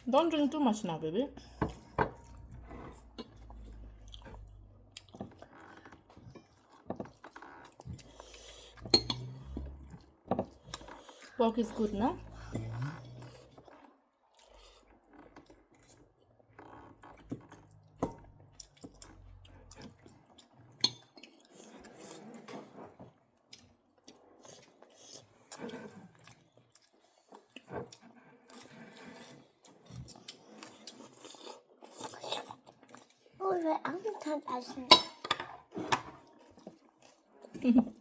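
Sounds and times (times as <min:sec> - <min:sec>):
chewing: 0:01.4 - 0:11.4, 0:12.2 - 0:34.8, 0:35.6 - 0:38.0
cutlery and plates clinking: 0:08.8 - 0:09.4, 0:34.9 - 0:36.2.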